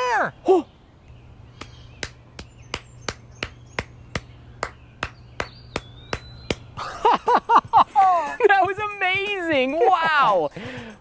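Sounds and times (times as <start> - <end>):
rhythmic hand clapping: 1.5 - 7.8.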